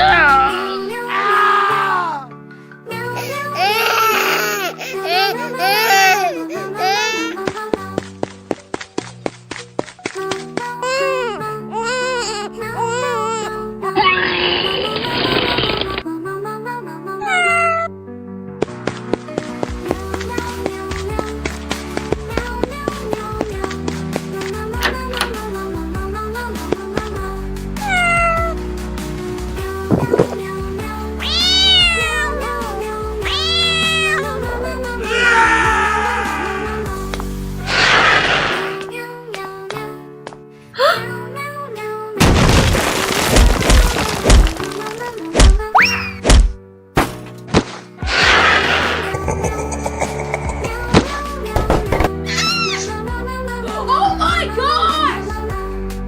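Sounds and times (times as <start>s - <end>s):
background music: 0.0s - 56.0s
cat meowing: 17.3s - 17.9s, 27.8s - 28.5s, 31.2s - 34.4s.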